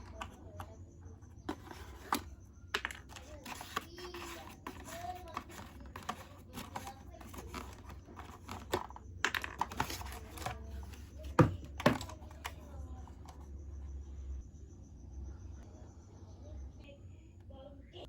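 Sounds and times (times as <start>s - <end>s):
plastic toy parts clicking: 1.5s - 12.6s.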